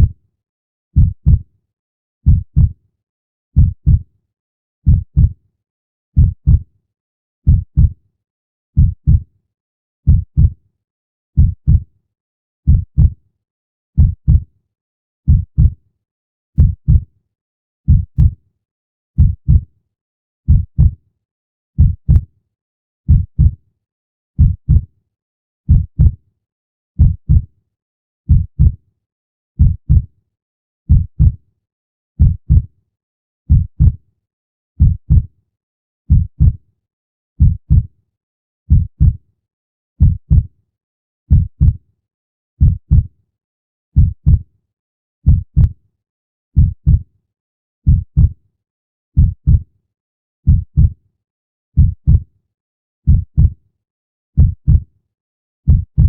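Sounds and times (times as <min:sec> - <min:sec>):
slow heartbeat thuds: 0:01.0 - 0:01.4, 0:02.3 - 0:02.7, 0:03.6 - 0:04.0, 0:04.9 - 0:05.3, 0:06.2 - 0:06.6, 0:07.5 - 0:07.9, 0:08.8 - 0:09.2, 0:10.1 - 0:10.5, 0:11.4 - 0:11.8, 0:12.7 - 0:13.1, 0:14.0 - 0:14.4, 0:15.3 - 0:15.8, 0:16.6 - 0:17.0, 0:17.9 - 0:18.3, 0:19.2 - 0:19.6, 0:20.5 - 0:21.0, 0:21.8 - 0:22.2, 0:23.1 - 0:23.6, 0:24.4 - 0:24.8, 0:25.7 - 0:26.2, 0:27.0 - 0:27.4, 0:28.3 - 0:28.8, 0:29.6 - 0:30.0, 0:30.9 - 0:31.4, 0:32.2 - 0:32.7, 0:33.5 - 0:34.0, 0:34.8 - 0:35.3, 0:36.1 - 0:36.6, 0:37.4 - 0:37.8, 0:38.7 - 0:39.2, 0:40.0 - 0:40.5, 0:41.3 - 0:41.8, 0:42.6 - 0:43.1, 0:44.0 - 0:44.4, 0:45.2 - 0:45.7, 0:46.6 - 0:47.0, 0:47.9 - 0:48.3, 0:49.2 - 0:49.6, 0:50.5 - 0:50.9, 0:51.8 - 0:52.2, 0:53.1 - 0:53.5, 0:54.4 - 0:54.8, 0:55.7 - 0:56.0.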